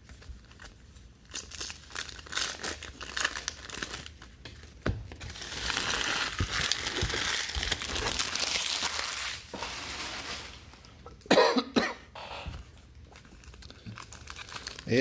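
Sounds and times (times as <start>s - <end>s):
wrapper tearing and crinkling: 0.0s - 10.9s, 13.1s - 15.0s
person coughing: 11.2s - 12.6s.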